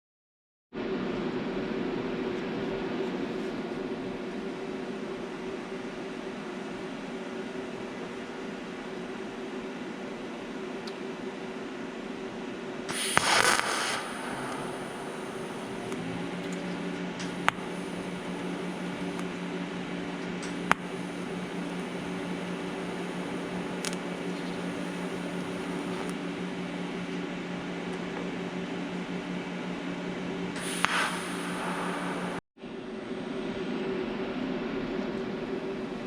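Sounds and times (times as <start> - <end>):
sharp clicks: 12.9 - 16.0, 17.2 - 19.3, 20.7 - 26.2, 30.6 - 32.4
short hiss: 12.9 - 16.0, 17.3 - 19.2, 20.7 - 26.2, 30.6 - 32.4
machine hum: 13.0 - 26.4, 30.1 - 36.0.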